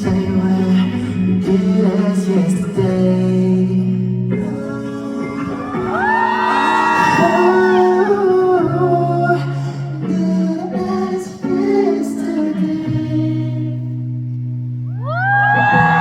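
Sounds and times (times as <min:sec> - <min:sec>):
crowd whooping and cheering: 0:05.4 - 0:08.3, 0:14.9 - 0:16.0.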